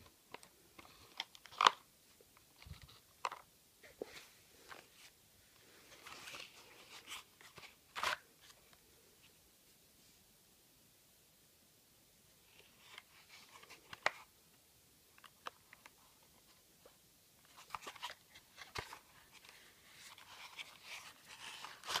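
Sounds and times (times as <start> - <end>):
paper rustling: 17.4 - 22.0.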